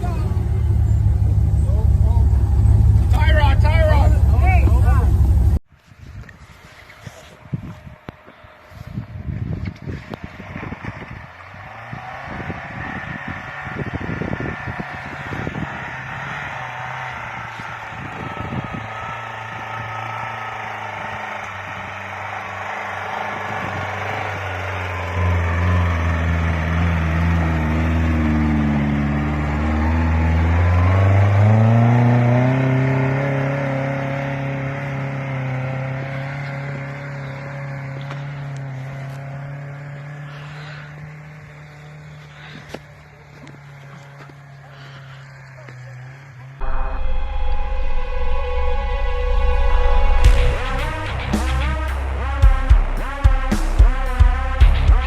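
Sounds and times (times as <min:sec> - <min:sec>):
off-road vehicle engine revving: 0:00.0 - 0:05.6, 0:09.5 - 0:55.0.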